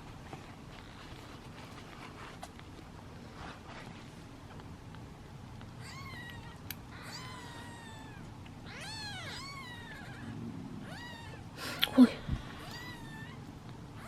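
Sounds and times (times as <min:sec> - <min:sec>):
kittens meowing: 0:05.8 - 0:14.0.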